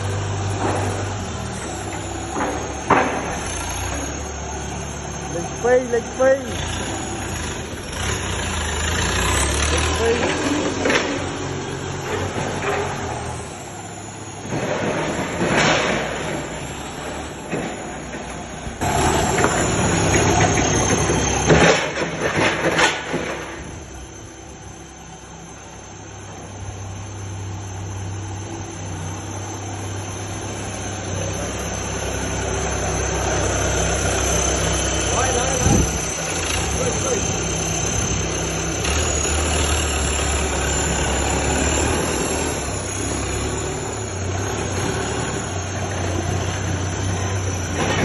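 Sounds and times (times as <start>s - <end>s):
high squeal sliding down: 0.0s - 48.0s
truck engine running: 0.0s - 48.0s
loud clattering and knocks: 0.2s - 4.1s, 10.0s - 13.4s, 14.4s - 23.8s, 47.6s - 48.0s.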